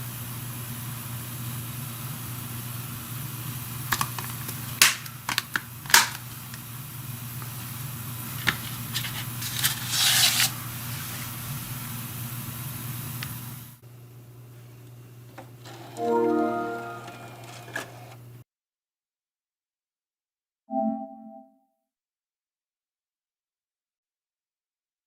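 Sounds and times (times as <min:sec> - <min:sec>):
wrapping rustle: 0:08.6 - 0:11.2.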